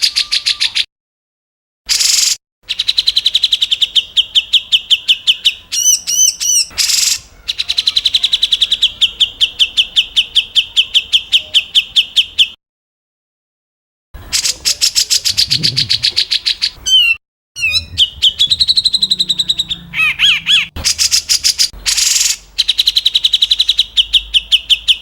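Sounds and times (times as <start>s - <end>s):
harsh rasping bird call: 0.0s - 0.9s, 14.2s - 25.0s
bird arched notes: 16.9s - 22.4s.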